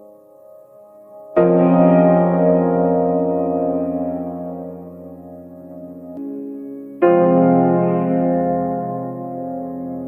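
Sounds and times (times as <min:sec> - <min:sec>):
ambient keyboard chords: 0:00.0 - 0:10.0
piano-like chord ringing: 0:00.0 - 0:10.0.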